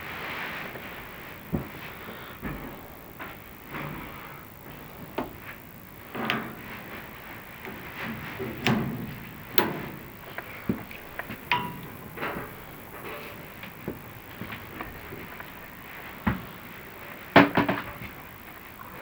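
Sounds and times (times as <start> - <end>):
knocks and clicks inside duct: 2.4 - 16.6, 17.3 - 18.2.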